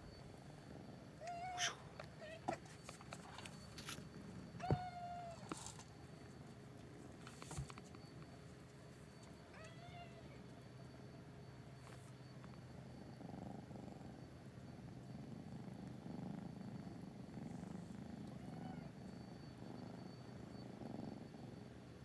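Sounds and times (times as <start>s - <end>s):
cat purring: 0.2s - 6.8s, 11.6s - 21.8s.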